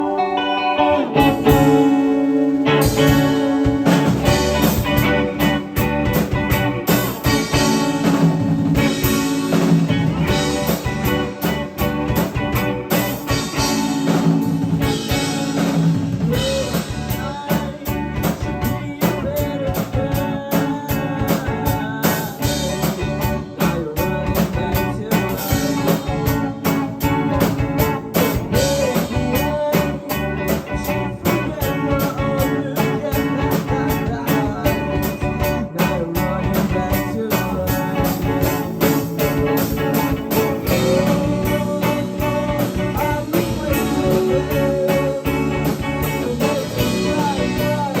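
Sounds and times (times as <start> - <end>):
electric guitar: 0.0 - 48.0
live band playing: 0.0 - 48.0.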